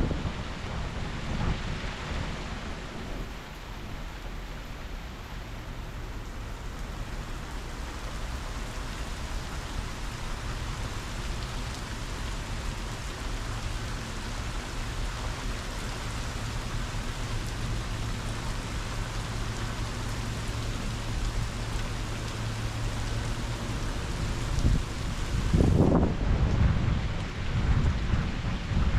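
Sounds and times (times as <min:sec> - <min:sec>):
heavy rain falling: 0:00.0 - 0:28.9
low rumble: 0:10.4 - 0:28.9.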